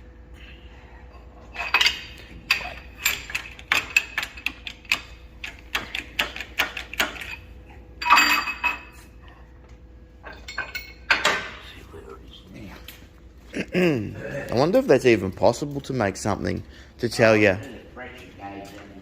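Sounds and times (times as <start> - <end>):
faint steady hum: 0.0 - 19.0
metal clinks and knocks: 1.4 - 9.2, 10.2 - 11.6.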